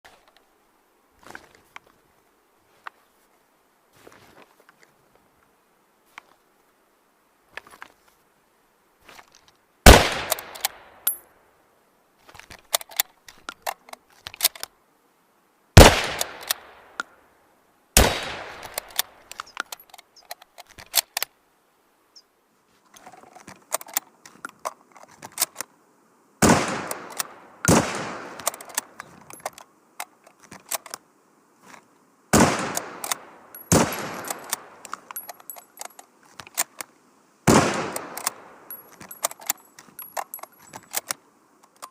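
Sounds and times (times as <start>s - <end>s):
rifle action clicks and rattles: 9.1s - 11.2s, 12.2s - 14.8s, 15.9s - 17.1s, 18.0s - 21.4s, 22.9s - 25.7s, 26.8s - 31.0s, 32.6s - 36.9s, 37.7s - 41.9s
rifle shots: 9.9s - 11.0s, 15.8s - 16.9s, 18.0s - 19.0s, 26.4s - 28.8s, 32.3s - 34.8s, 37.5s - 38.6s.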